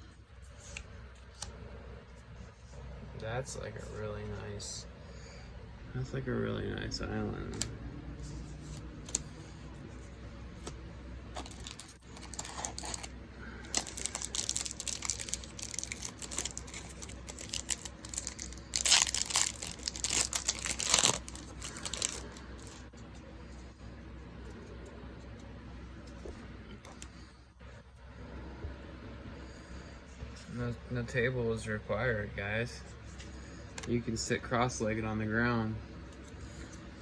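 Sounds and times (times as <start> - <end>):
foil wrapper crinkling and tearing: 11.3 - 22.9.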